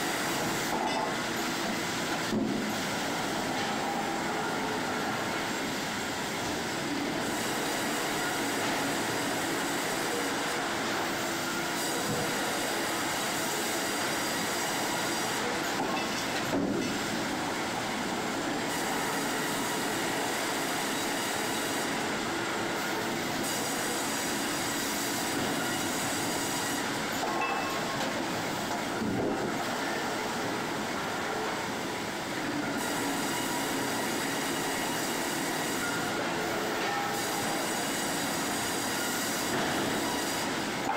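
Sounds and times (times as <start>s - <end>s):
high metallic whine: 27.2s - 28.1s, 35.8s - 37.9s
sawmill machinery din: 32.6s - 40.9s.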